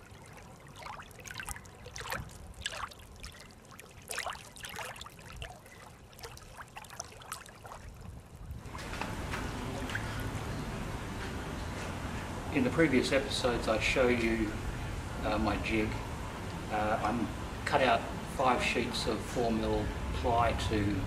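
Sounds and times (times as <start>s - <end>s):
water trickling and lapping: 0.0s - 10.6s.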